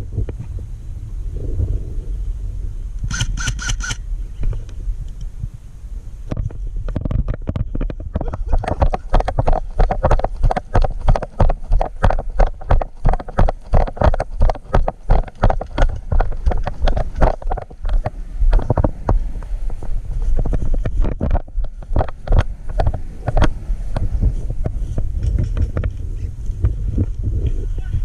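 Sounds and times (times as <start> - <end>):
wind on microphone: 0.0 - 28.0
rhythmic thuds with rustling: 6.3 - 27.2.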